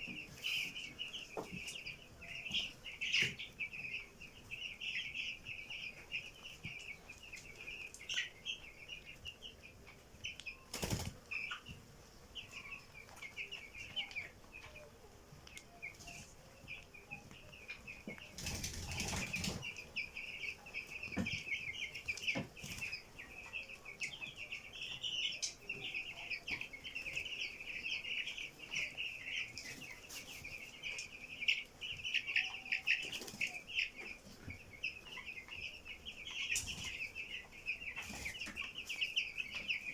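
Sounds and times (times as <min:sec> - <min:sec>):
chickens chirping: 0:00.0 - 0:39.9
wings flapping: 0:10.7 - 0:11.2, 0:18.4 - 0:19.7.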